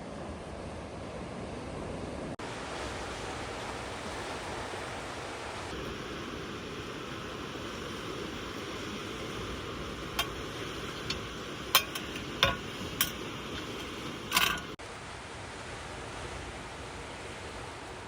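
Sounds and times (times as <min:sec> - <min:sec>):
sea waves rushing: 0:01.4 - 0:18.0
objects clinking and knocking: 0:10.1 - 0:14.8.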